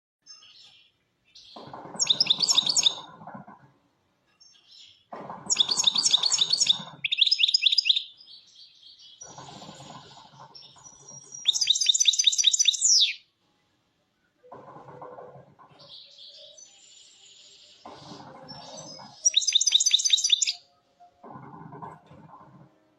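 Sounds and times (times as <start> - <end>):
goldfinch twittering trills: 2.0 - 3.0, 5.5 - 8.1, 10.8 - 13.2, 19.2 - 20.6.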